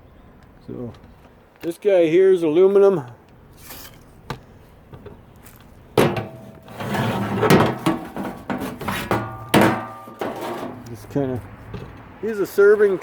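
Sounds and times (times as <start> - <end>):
metal tray knocking and clattering: 6.0 - 10.8.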